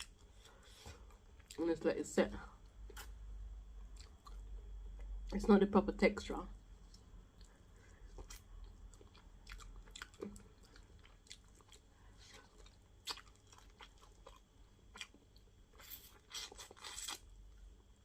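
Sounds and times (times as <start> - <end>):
chewing and wet mouth smacks: 4.0 - 5.4, 6.8 - 17.3.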